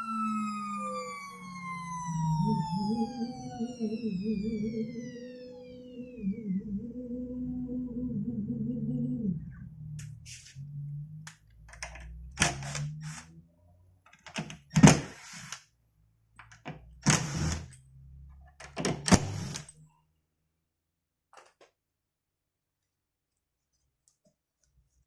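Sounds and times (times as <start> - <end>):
router whine: 0.0 - 7.0, 11.7 - 13.4, 14.4 - 15.6, 17.0 - 17.7, 19.0 - 19.7
low hum: 0.0 - 14.8.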